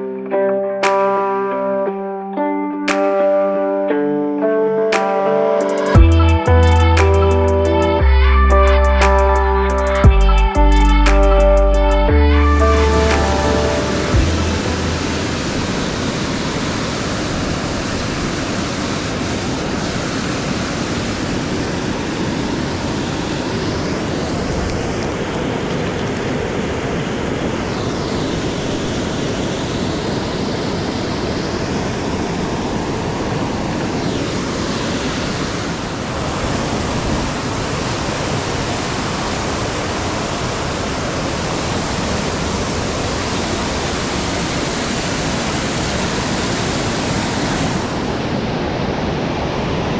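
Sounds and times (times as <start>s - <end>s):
rushing river water: 12.3s - 49.9s.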